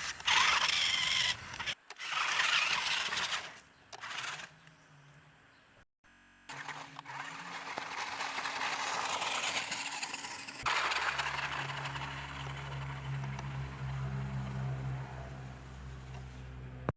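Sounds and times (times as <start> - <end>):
rc truck clattering over ground: 0.0 - 4.5, 6.5 - 13.6.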